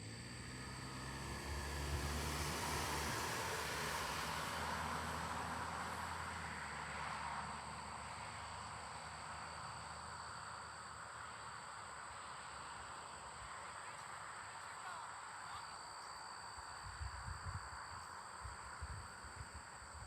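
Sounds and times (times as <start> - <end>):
low engine rumble and rushing: 0.0 - 14.4.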